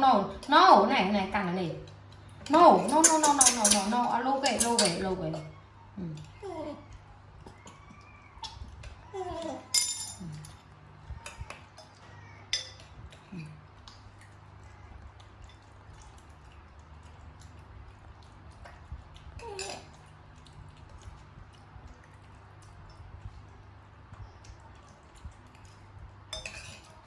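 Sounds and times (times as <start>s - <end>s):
low steady hum: 0.0s - 27.0s
dishes and utensils clinking: 2.4s - 5.5s, 9.6s - 10.6s, 11.2s - 12.9s, 25.6s - 27.0s.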